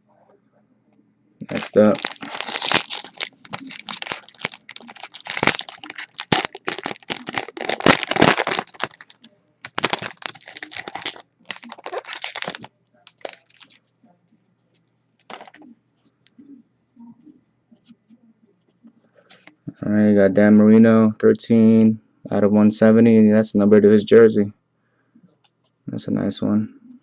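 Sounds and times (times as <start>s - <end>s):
cards clicking and rustling: 1.4s - 13.8s, 15.2s - 15.6s
plastic wrapping torn and crinkled: 1.4s - 13.8s, 15.2s - 15.6s.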